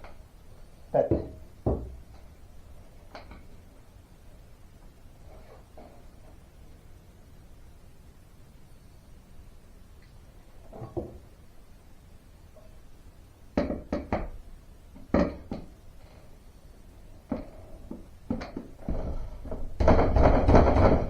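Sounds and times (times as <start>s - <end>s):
metal door plate knocking: 1.1s - 2.0s, 13.6s - 14.4s, 18.3s - 21.0s.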